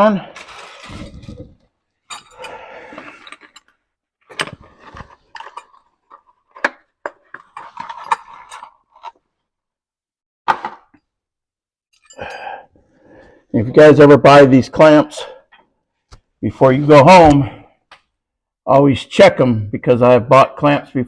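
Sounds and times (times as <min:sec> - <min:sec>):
metal clinking and knocking: 0:02.0 - 0:09.1.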